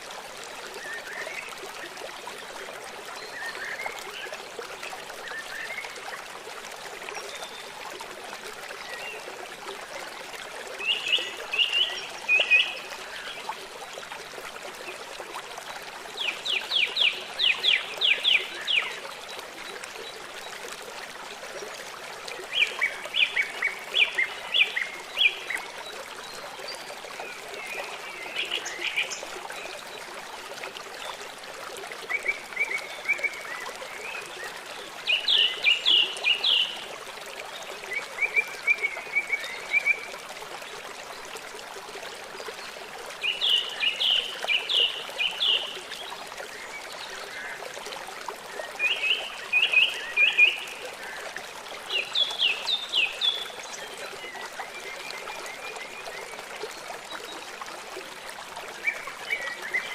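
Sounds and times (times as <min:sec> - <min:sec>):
trickling stream: 0:00.0 - 0:59.9
songbird singing: 0:32.2 - 0:36.9.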